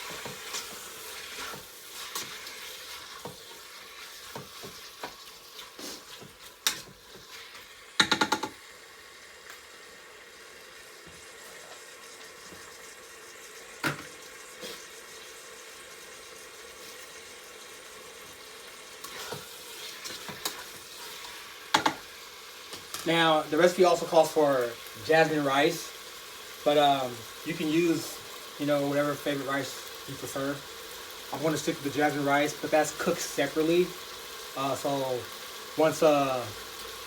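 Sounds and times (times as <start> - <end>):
chicken sizzling in oil: 0.0 - 37.0
knock: 8.0 - 8.5.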